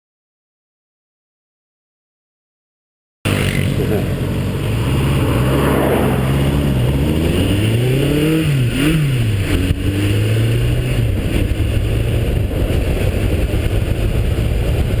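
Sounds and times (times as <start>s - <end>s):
motorcycle engine revving: 3.3s - 15.0s
heavy wind noise: 3.7s - 15.0s.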